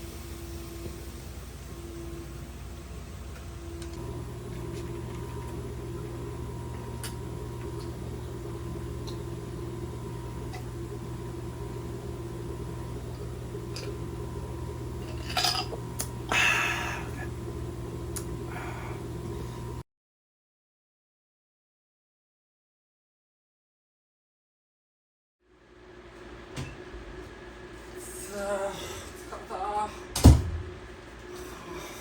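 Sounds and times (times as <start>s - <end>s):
machine humming: 0.0s - 19.8s.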